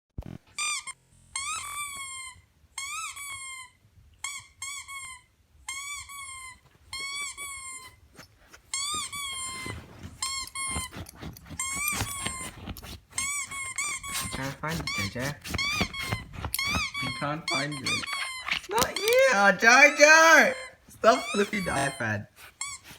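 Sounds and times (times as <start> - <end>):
rubber squeaky toy squeaking: 0.5 - 22.9
knocks and scuffing: 8.2 - 19.2.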